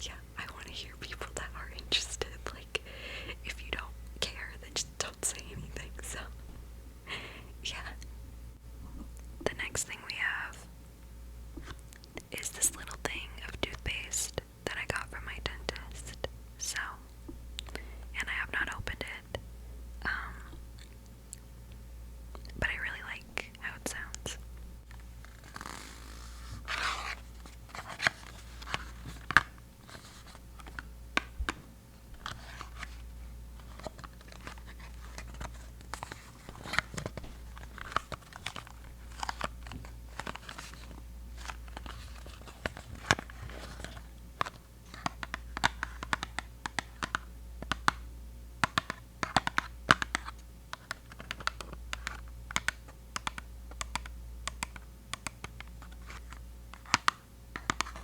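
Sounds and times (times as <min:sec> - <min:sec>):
toothpaste tube tapped and crinkled: 0:44.4 - 0:48.0, 0:48.6 - 0:58.0.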